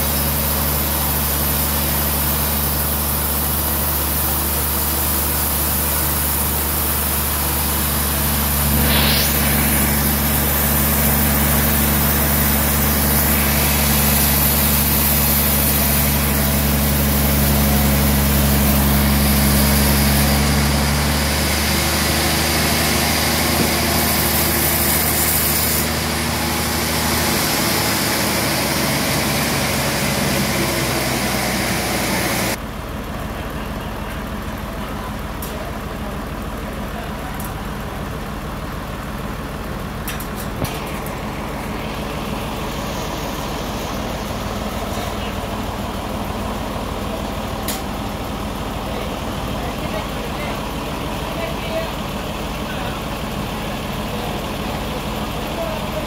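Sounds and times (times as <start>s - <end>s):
band saw motor hum: 0.0s - 32.6s
rising whine: 5.4s - 32.6s, 40.6s - 46.2s
saw blade hissing: 5.8s - 20.8s, 22.1s - 32.6s.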